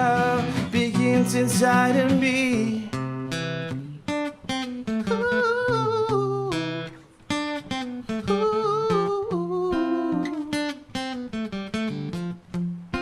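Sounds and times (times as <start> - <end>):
acoustic guitar strumming: 0.0 - 13.0
person singing wavering notes: 8.3 - 10.7.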